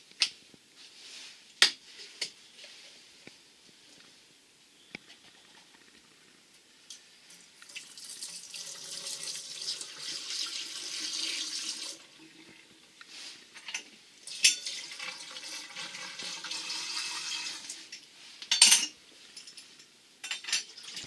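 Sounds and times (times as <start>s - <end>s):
water running from faucet: 7.6s - 12.2s, 14.3s - 17.9s
water spurts: 14.3s - 17.8s.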